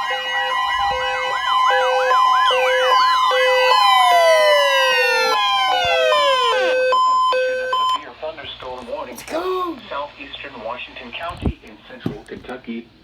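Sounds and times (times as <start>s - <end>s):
rapid siren-like chirps: 0.0s - 8.0s
two-tone warning signal: 0.0s - 8.0s
tones sliding downward in pitch: 0.4s - 8.0s
pulsing beep: 3.7s - 8.0s.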